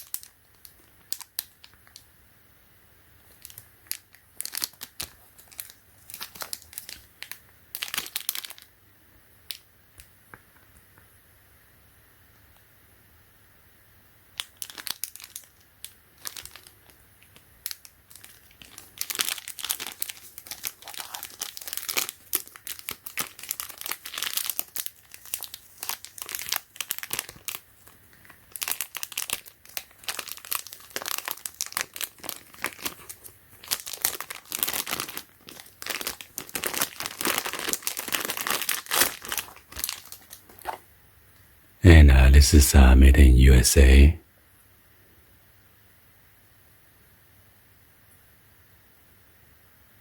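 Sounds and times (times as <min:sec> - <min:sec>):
packaging crinkling: 0:18.1 - 0:27.5, 0:30.1 - 0:40.6.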